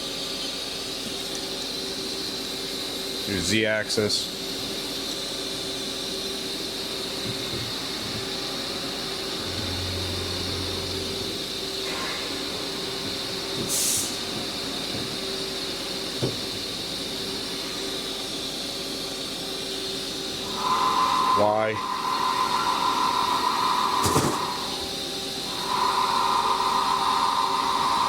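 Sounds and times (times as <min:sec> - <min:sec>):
machining center humming: 0:07.9 - 0:13.6, 0:14.2 - 0:28.0
low drone: 0:09.2 - 0:12.8
air hiss burst: 0:13.6 - 0:14.2, 0:20.6 - 0:24.8.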